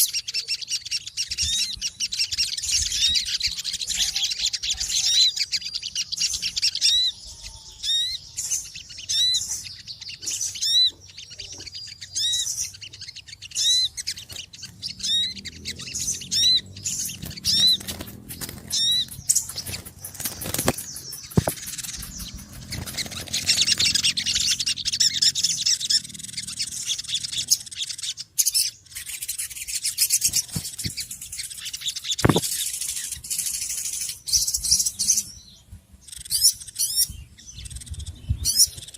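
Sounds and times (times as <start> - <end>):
small birds chirping: 0.0 - 38.9.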